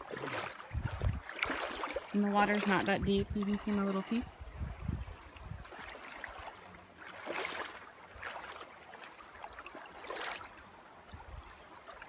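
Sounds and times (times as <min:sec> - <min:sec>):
feet splashing through water: 0:00.0 - 0:12.0
river rushing: 0:01.3 - 0:04.4.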